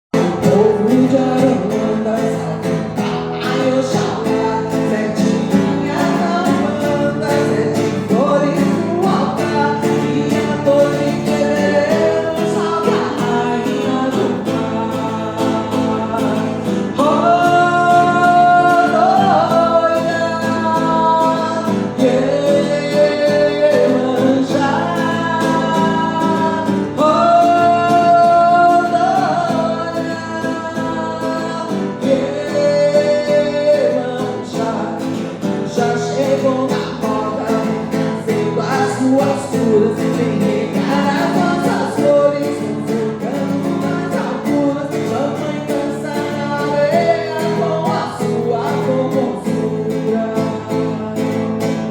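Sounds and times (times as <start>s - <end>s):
plucked guitar: 0.1s - 51.9s
woman singing a chant: 3.0s - 4.4s.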